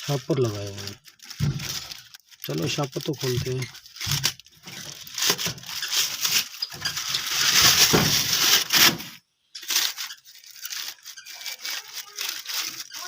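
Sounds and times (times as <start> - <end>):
plastic bags crinkling and ripping: 0.0 - 13.0
scraping: 0.0 - 13.0.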